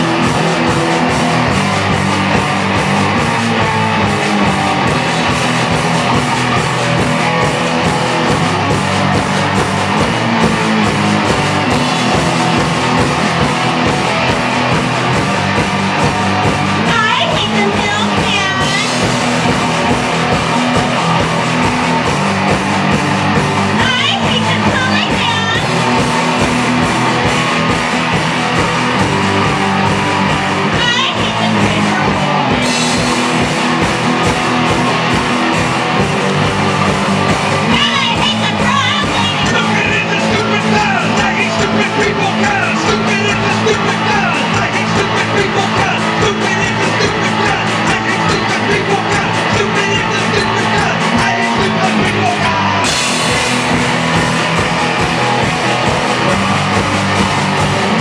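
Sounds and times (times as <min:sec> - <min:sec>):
driving drum beat: 0:00.0 - 0:58.0
electric guitars: 0:00.0 - 0:58.0
live punk rock band: 0:00.0 - 0:58.0
shouted singing: 0:23.7 - 0:26.0, 0:37.5 - 0:54.4.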